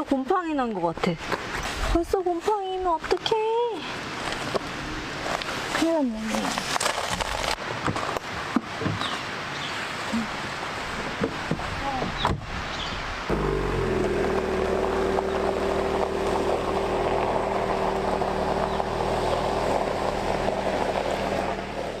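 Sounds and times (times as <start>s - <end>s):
rain hiss: 7.4s - 22.0s
steady engine-like hum: 13.3s - 22.0s.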